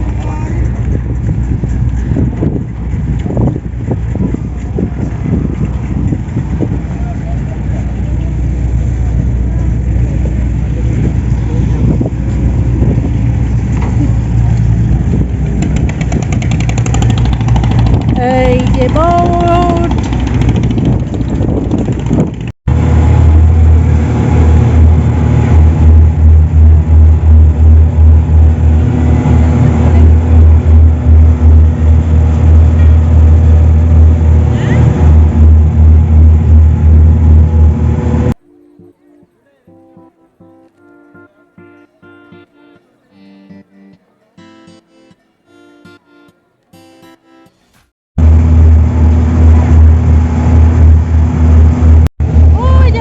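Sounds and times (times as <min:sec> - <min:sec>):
low regular throbbing: 0:00.0 - 0:38.4
boat engine humming: 0:00.0 - 0:43.1, 0:48.2 - 0:53.0.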